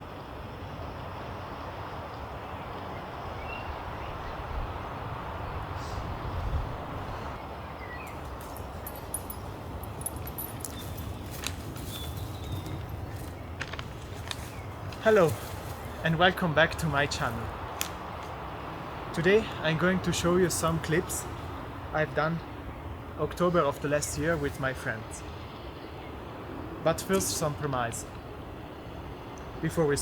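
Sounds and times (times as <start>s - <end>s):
wind-like rushing noise: 0.0s - 23.2s
crackling clicks: 8.1s - 15.0s, 16.7s - 18.4s.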